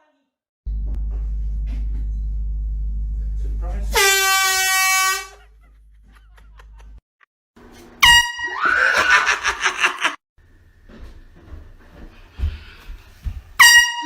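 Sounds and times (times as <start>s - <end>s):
air horn blast: 3.6s - 5.6s, 8.0s - 8.6s, 13.6s - 14.0s.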